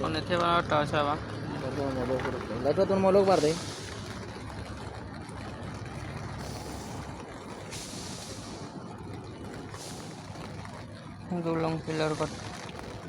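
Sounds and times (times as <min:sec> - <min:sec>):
low machine rumble: 0:00.0 - 0:13.0
hiss: 0:03.3 - 0:04.0, 0:06.4 - 0:08.8, 0:09.8 - 0:10.4, 0:12.0 - 0:12.7.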